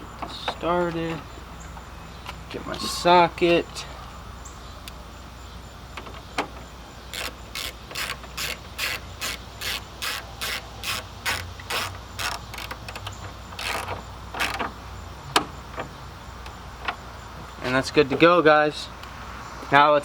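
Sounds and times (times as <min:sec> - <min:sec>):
hand ratchet clicking: 0:07.1 - 0:14.6.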